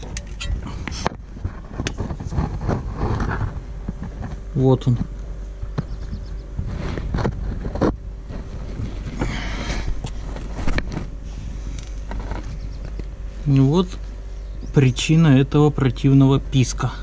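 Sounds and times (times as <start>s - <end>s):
hand tools clicking and knocking: 0.0s - 1.0s
steady low hum: 0.0s - 17.0s.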